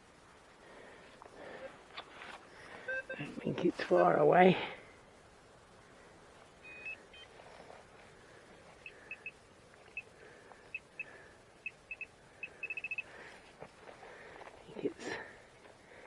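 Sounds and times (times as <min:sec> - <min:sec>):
metal detector beeping: 0:02.8 - 0:03.4, 0:06.6 - 0:07.4, 0:08.8 - 0:10.1, 0:10.7 - 0:13.1.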